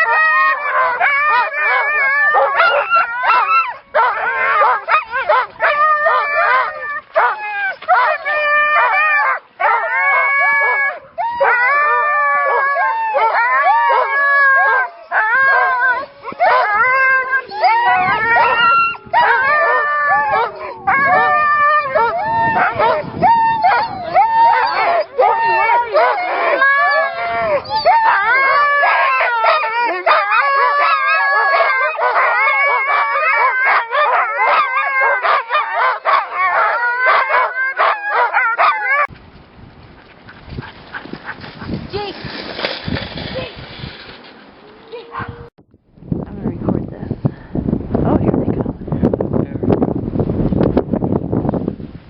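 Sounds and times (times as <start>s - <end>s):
sled dogs howling and yelping: 0.0s - 39.1s, 44.6s - 45.5s.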